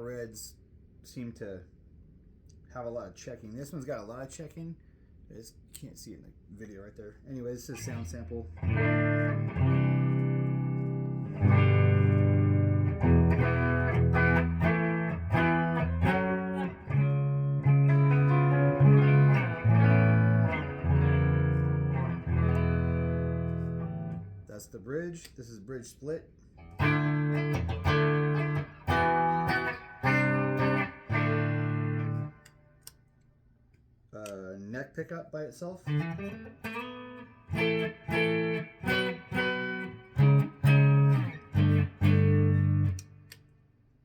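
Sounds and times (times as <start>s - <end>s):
electric guitar chords: 7.8s - 24.4s, 26.6s - 32.5s, 35.9s - 43.4s.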